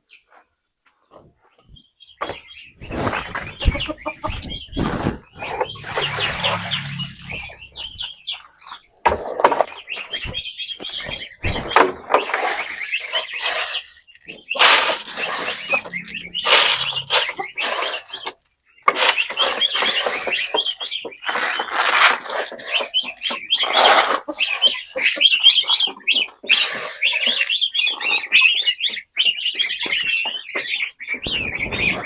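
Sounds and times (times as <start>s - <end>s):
chickens clucking and peeping: 1.0s - 32.0s
sharp knocks and rustles: 1.1s - 8.1s.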